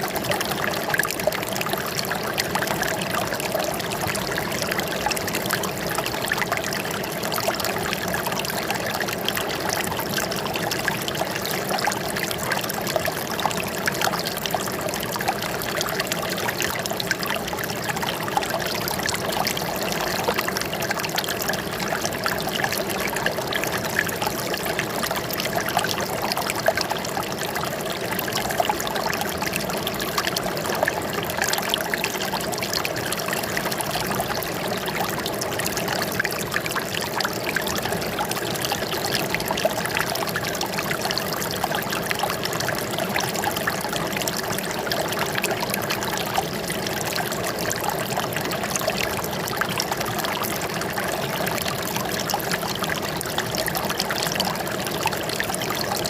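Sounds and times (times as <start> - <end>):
water trickling and splashing: 0.0 - 56.0.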